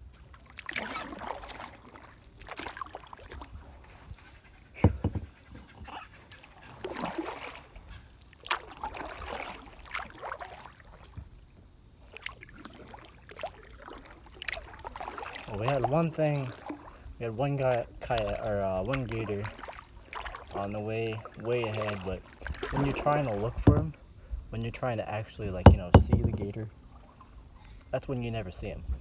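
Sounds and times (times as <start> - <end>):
kayak paddle splashing in water: 0.0 - 4.0, 6.4 - 24.1, 25.5 - 27.2
sharp knock: 25.7 - 26.5.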